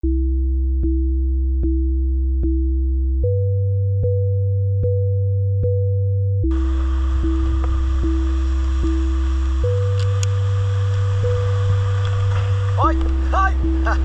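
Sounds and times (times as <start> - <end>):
electronic synth music: 0.0 - 14.0
clicks: 9.8 - 11.1, 12.0 - 13.2.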